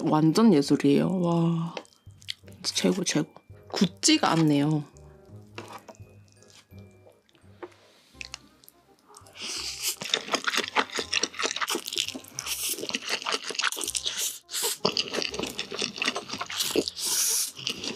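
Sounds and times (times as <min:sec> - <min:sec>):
loud crunchy chewing: 0:08.2 - 0:17.9.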